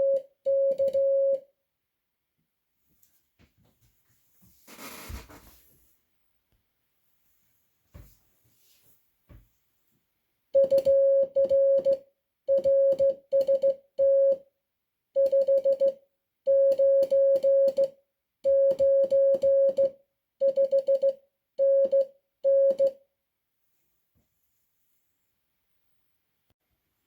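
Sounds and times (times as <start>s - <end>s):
morse code beeps: 10.6s - 14.4s, 15.2s - 15.9s, 16.5s - 17.9s, 18.5s - 22.9s.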